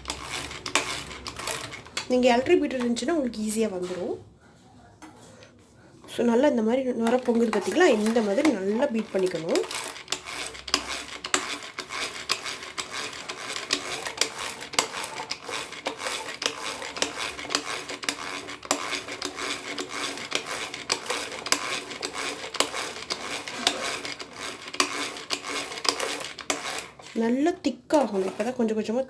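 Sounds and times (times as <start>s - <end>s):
hand beater clicking against bowl: 0.0s - 3.0s, 7.0s - 27.2s.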